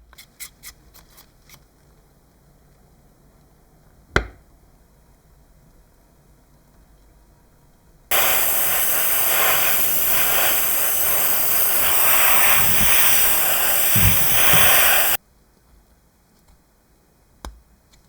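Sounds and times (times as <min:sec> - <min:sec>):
pressurised spray hissing: 0:08.1 - 0:15.2.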